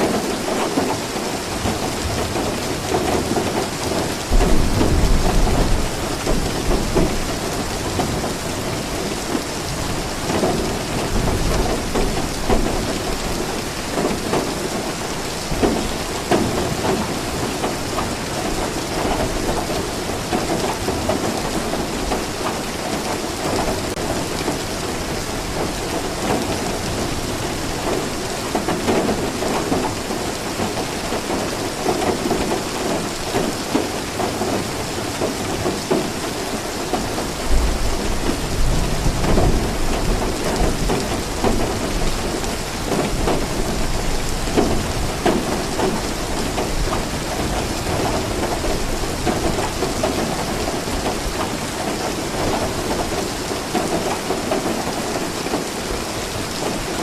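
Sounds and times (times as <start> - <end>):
steady rain: 0.0 - 57.0
thunder rumbling: 3.5 - 14.8.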